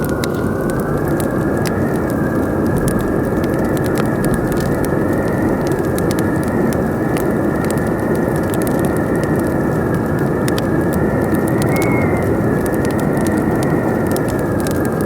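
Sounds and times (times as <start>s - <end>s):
wind howling: 0.0s - 15.0s
wood fire crackling and popping: 0.0s - 15.0s
thin steady whistle: 10.8s - 14.3s.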